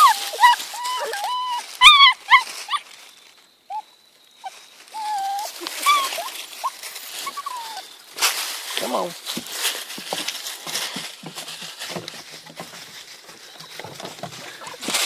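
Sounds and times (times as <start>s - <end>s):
puppies whining and whimpering: 0.0s - 3.0s, 3.7s - 8.0s, 13.5s - 15.0s.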